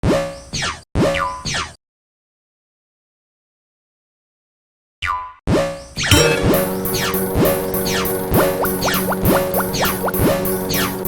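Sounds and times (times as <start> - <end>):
cartoon boing sound effect: 6.1 - 6.7.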